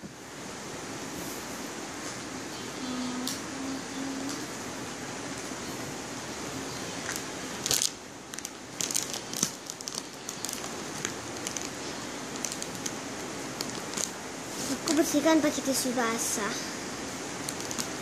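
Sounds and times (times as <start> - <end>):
packet and tissues crinkling: 7.0 - 14.2, 17.4 - 18.0.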